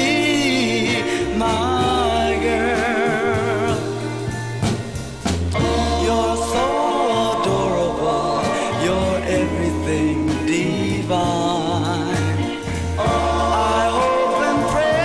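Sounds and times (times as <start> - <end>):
soul ballad with vibrato vocals: 0.0 - 15.0
drum hits: 4.5 - 7.3.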